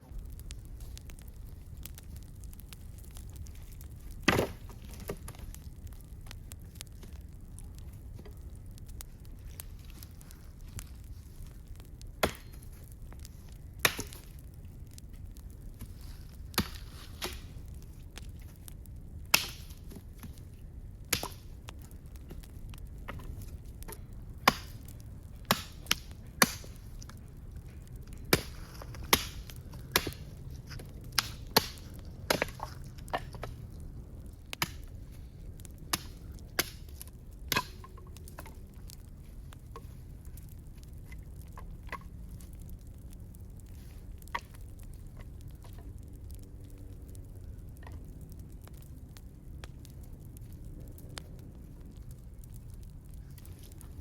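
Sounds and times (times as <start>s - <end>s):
steady low rumble: 0.0s - 54.0s
sharp wooden knocks and cracks: 4.1s - 5.6s, 12.2s - 13.2s, 13.8s - 14.4s, 15.8s - 17.5s, 19.3s - 20.4s, 21.1s - 27.2s, 27.8s - 33.6s, 34.6s - 34.9s, 35.9s - 38.7s.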